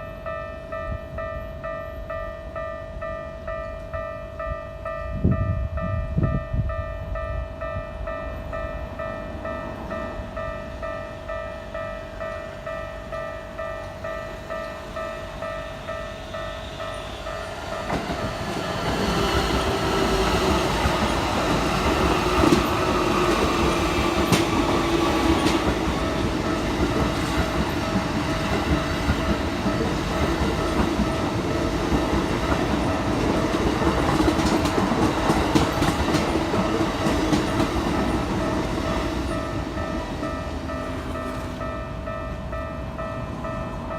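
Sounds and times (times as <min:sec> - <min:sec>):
crossing bell clanging: 0:00.0 - 0:43.9
train wheels clattering over rails: 0:17.6 - 0:41.7.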